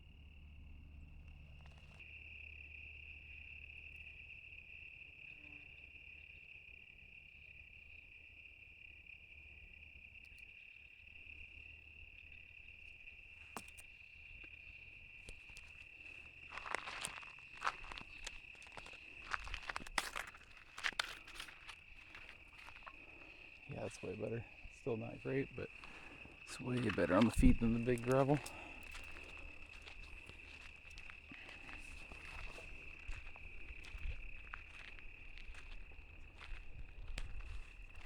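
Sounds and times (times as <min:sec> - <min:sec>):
crickets chirping: 0:00.0 - 0:38.0
footsteps: 0:15.3 - 0:24.1, 0:25.7 - 0:38.0.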